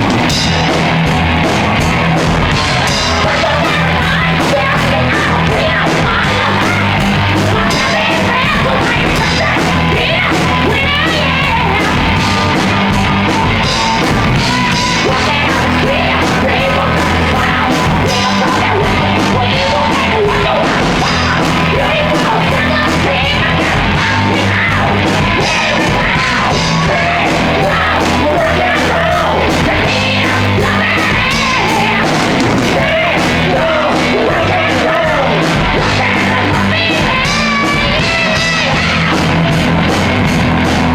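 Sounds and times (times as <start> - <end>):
drum beat: 0.0 - 1.3, 2.4 - 5.1, 6.3 - 12.6, 13.8 - 18.6, 21.2 - 23.1, 27.4 - 33.7
bass notes: 0.0 - 40.9
shouted rock vocals: 0.0 - 40.9.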